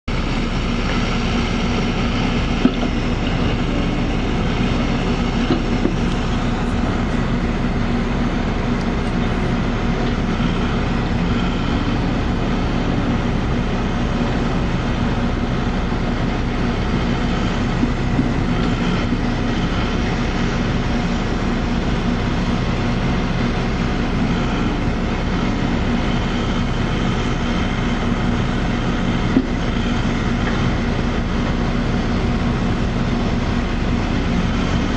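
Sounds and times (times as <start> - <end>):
diesel engine running under load: 0.0 - 34.9.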